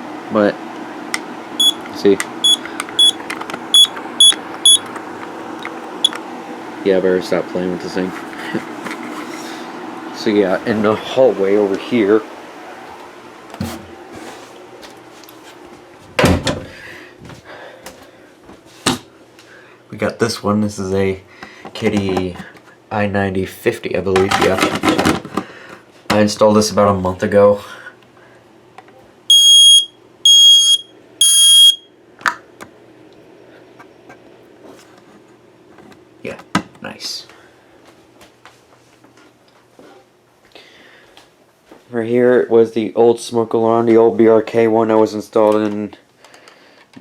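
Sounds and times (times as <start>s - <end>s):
smoke alarm beeps: 1.6s - 4.9s, 29.3s - 31.9s.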